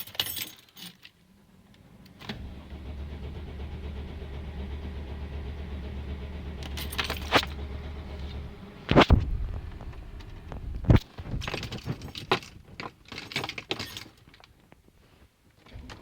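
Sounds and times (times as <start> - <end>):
van engine droning: 1.4 - 12.1.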